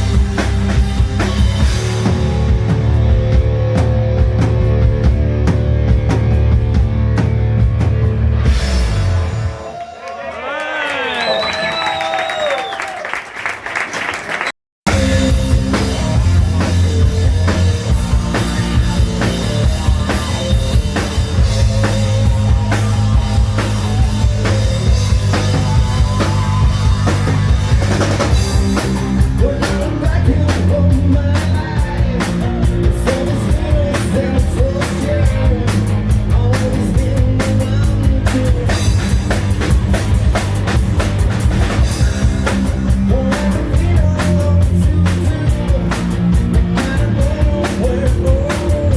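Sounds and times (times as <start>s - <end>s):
hard rock band playing: 0.0s - 9.8s, 14.9s - 48.9s
person singing: 14.9s - 39.4s, 42.2s - 48.9s.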